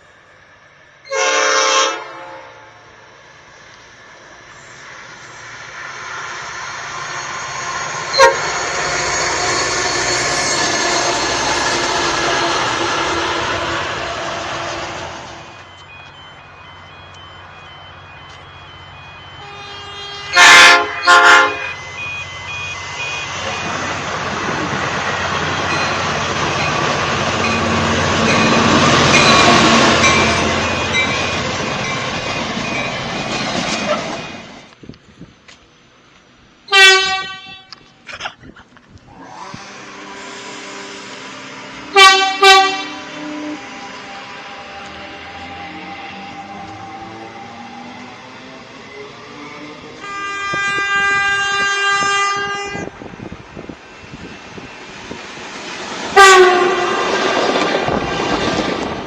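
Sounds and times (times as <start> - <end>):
train wheels on rails: 0.0 - 59.0
train horn blasts: 1.1 - 2.8, 8.1 - 8.6, 19.4 - 21.8, 36.7 - 37.8, 41.9 - 43.6, 50.0 - 53.0, 56.2 - 57.1.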